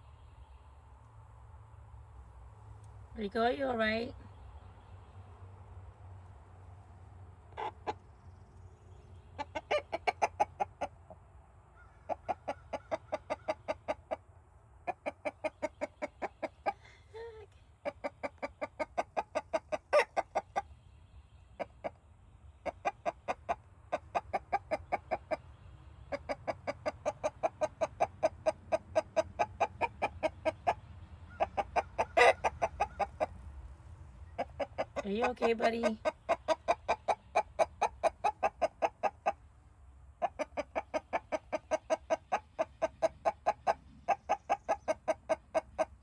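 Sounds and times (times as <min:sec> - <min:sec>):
rooster snoring clucking pulses: 0:14.9 - 0:20.7, 0:40.2 - 0:46.0.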